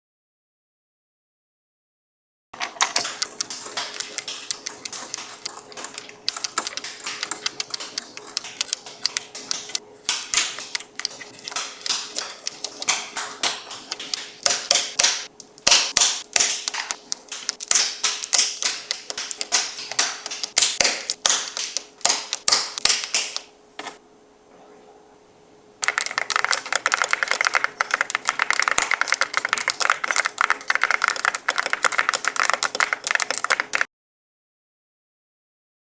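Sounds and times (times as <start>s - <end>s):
keyboard keystroke clacks: 2.6s - 24.0s, 25.8s - 33.9s
faint steady hum: 2.6s - 33.8s.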